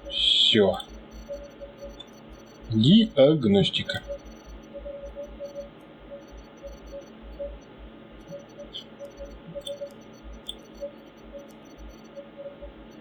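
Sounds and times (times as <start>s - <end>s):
desktop computer humming: 0.0s - 13.0s
computer mouse clicks: 8.2s - 12.2s.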